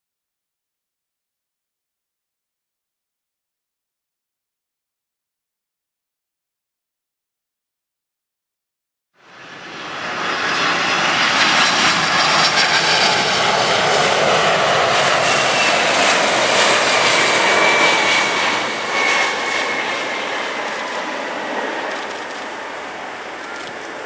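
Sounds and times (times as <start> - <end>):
jet engines rushing past: 9.2 - 24.0.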